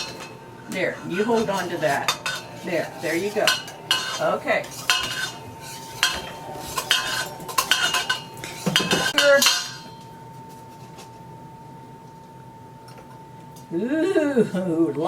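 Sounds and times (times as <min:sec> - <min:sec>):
spoon clinking against bowl: 0:03.3 - 0:10.1.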